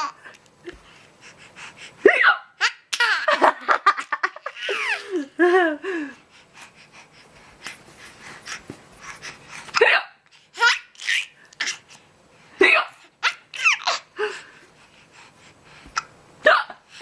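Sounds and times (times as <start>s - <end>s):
young child laughing: 2.6s - 5.8s.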